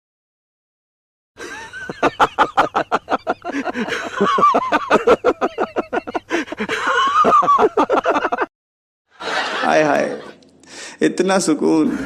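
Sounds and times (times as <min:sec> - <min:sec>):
choppy laughter: 0:01.4 - 0:08.5.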